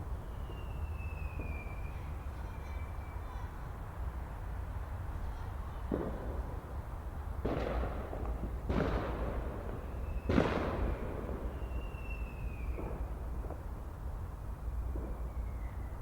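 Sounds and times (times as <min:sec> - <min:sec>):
faint falling whistle: 0:00.2 - 0:02.1, 0:15.1 - 0:16.0
fireworks bangs: 0:05.8 - 0:12.0.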